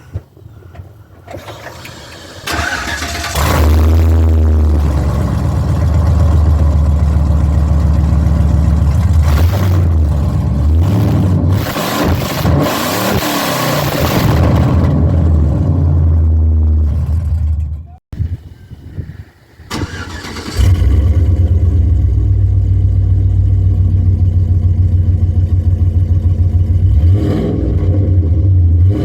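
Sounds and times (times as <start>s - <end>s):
engine revving: 1.7s - 17.8s, 19.7s - 29.0s
truck engine running loud: 3.3s - 11.6s.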